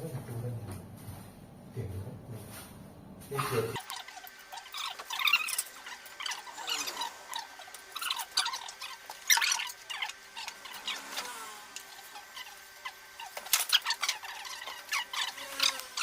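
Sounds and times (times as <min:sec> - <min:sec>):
foam rubbing squeals: 0:03.3 - 0:16.0.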